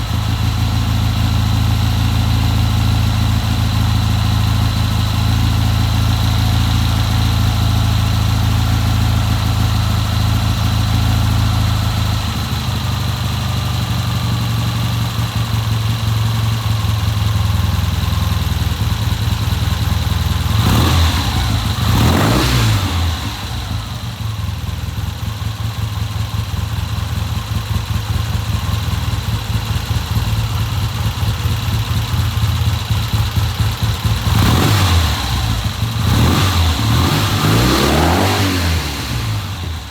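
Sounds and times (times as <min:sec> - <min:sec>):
motorcycle engine idling: 0:00.0 - 0:39.9
engine revving on throttle blip: 0:20.5 - 0:24.0, 0:34.2 - 0:39.9.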